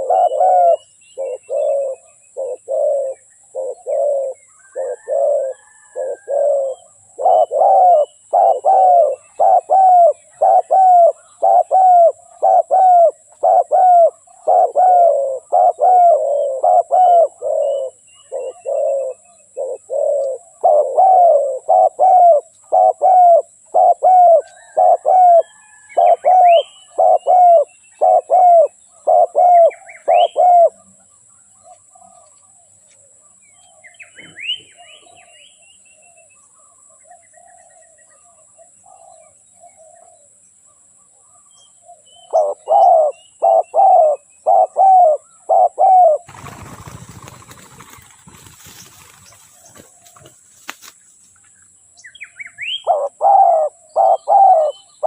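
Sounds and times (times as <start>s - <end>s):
dove cooing: 0.0s - 30.9s, 42.3s - 50.4s, 52.6s - 54.9s.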